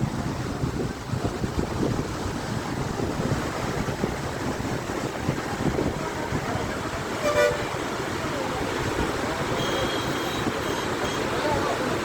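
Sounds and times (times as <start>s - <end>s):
water rushing from spillway: 0.0s - 12.0s
wind gusting on microphone: 0.0s - 12.0s.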